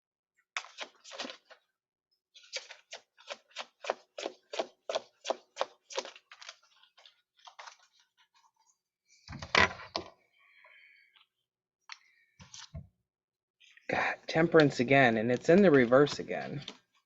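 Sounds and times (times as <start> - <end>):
cards being shuffled: 0.6 - 1.6, 2.4 - 8.2, 15.4 - 17.0.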